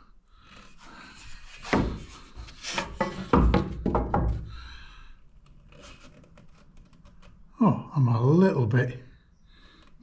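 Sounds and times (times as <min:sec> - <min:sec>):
wood knocks and scrapes: 0:00.5 - 0:04.6.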